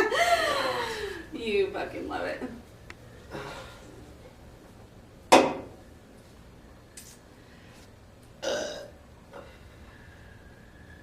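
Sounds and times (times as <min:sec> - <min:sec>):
loud burp: 0:08.4 - 0:09.0.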